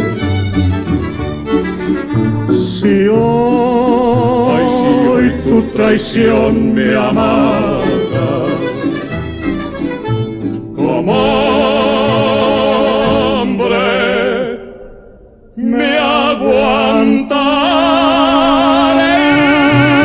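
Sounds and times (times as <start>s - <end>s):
strings: 0.0s - 15.4s, 16.0s - 20.0s
men singing operatically: 2.5s - 9.2s, 10.8s - 14.9s, 15.6s - 20.0s.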